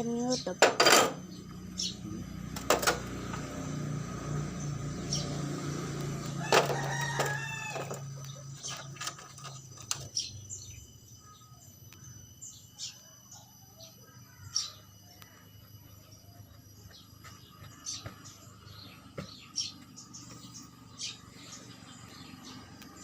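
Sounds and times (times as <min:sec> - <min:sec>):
rooster crowing: 0:06.1 - 0:08.3.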